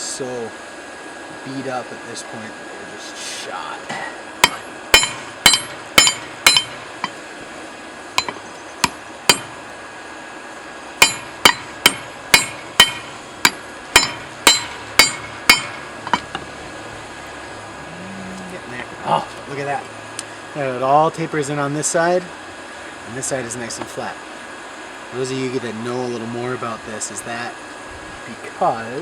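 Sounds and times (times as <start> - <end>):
hammer striking hot steel: 3.9 - 7.2, 8.1 - 9.6, 11.0 - 16.7.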